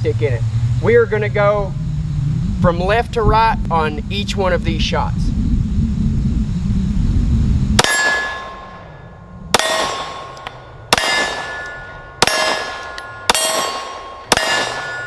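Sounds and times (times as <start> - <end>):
low rumble: 0.0 - 15.0
pistol shots: 7.8 - 8.8, 9.6 - 15.0
steel target plate clanging: 7.8 - 8.9, 9.6 - 15.0.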